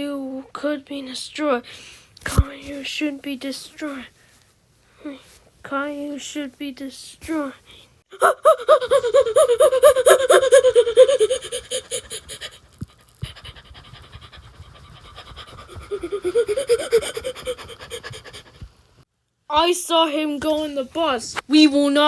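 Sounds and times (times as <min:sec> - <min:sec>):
cartoon character panting: 0:08.1 - 0:18.7.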